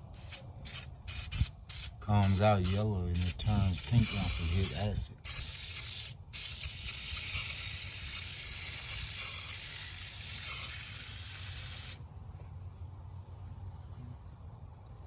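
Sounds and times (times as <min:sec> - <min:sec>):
aerosol spray hiss: 0:00.1 - 0:12.0.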